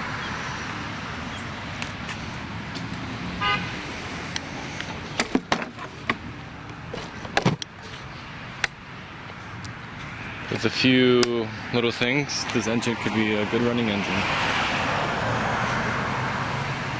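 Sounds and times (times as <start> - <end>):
outdoor background noise: 0.0 - 16.9
short high horn beep: 3.4 - 3.7.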